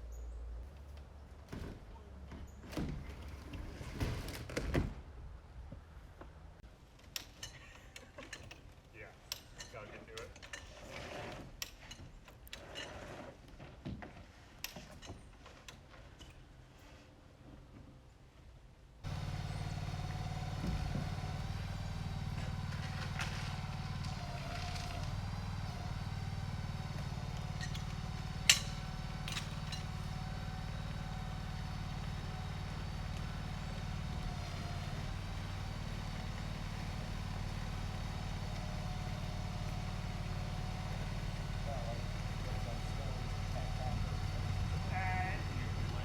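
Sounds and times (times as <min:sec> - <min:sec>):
machine engine running: 0:19.0 - 0:46.0.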